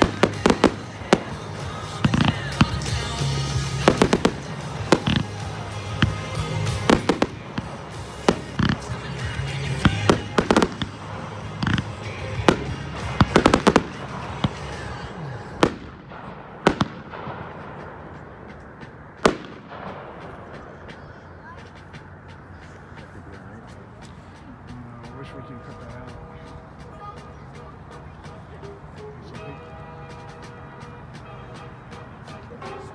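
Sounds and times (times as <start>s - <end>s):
fireworks bangs: 0.0s - 22.6s
music: 0.0s - 32.9s.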